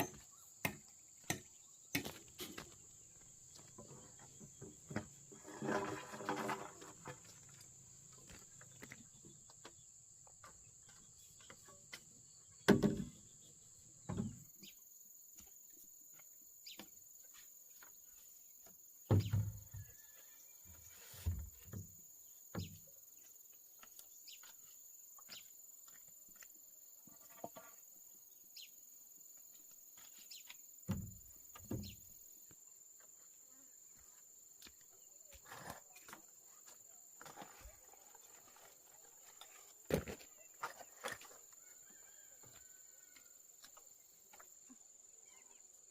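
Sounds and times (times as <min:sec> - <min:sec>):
insects droning: 0:00.0 - 0:45.9
knocks and thuds: 0:30.9 - 0:32.0.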